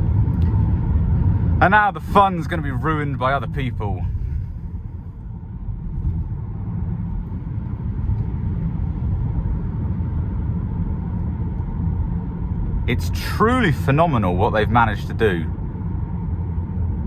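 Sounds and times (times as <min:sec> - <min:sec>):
road and tyre rumble: 0:00.0 - 0:17.0.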